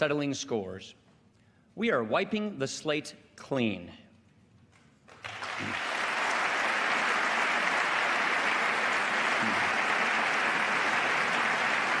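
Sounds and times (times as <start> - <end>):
crowd applauding: 5.1 - 12.0.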